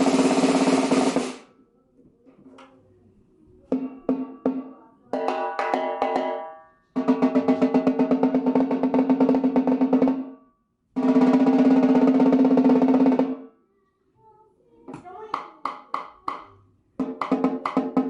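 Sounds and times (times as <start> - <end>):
snare drum strokes and rolls: 0.0 - 1.5, 11.0 - 13.4.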